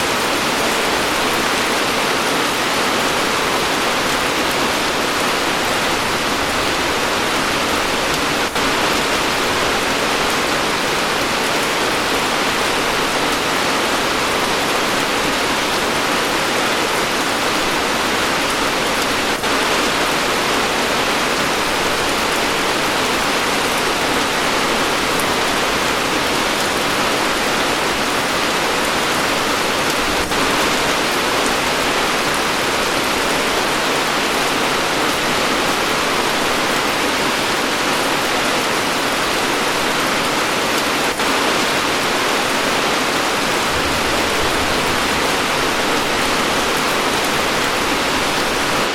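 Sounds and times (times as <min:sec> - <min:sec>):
heavy rain falling: 0:00.0 - 0:48.9.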